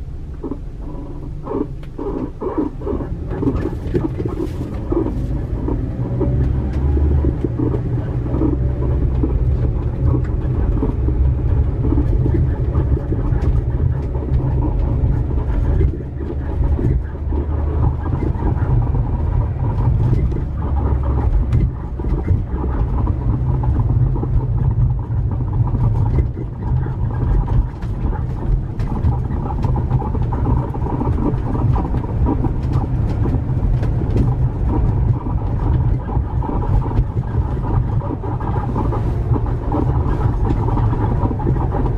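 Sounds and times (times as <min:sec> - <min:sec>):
road rumble: 0:00.0 - 0:41.9.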